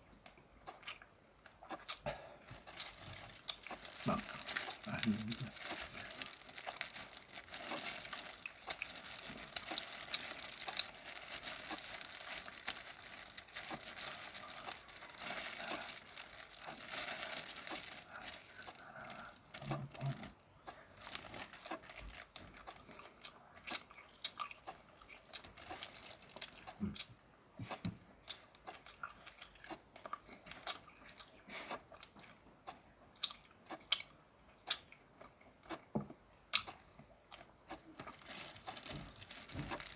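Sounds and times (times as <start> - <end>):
chewing and biting crunches: 0.6 - 35.9, 36.5 - 39.9
shrimp shells crackling and tearing: 2.5 - 20.4, 21.0 - 26.8, 37.9 - 39.9.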